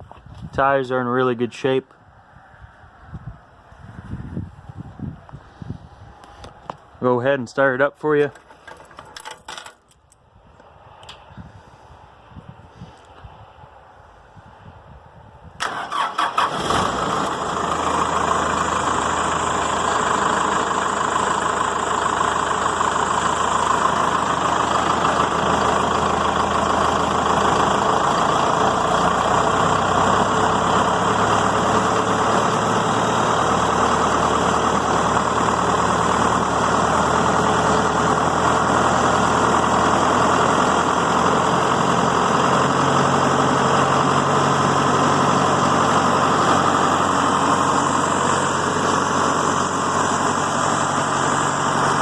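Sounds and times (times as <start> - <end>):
diesel engine cranking and starting: 8.2 - 10.1, 15.6 - 52.0
diesel engine idling: 15.6 - 52.0.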